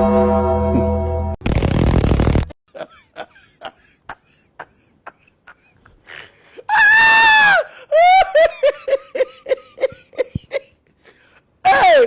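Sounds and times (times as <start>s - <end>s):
burst of noise: 1.4s - 2.6s
loud high drawn-out cry: 6.7s - 7.7s, 11.6s - 12.0s.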